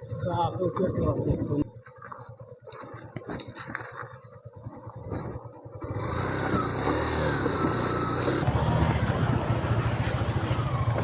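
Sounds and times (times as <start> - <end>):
motorcycle engine running: 5.3 - 11.0.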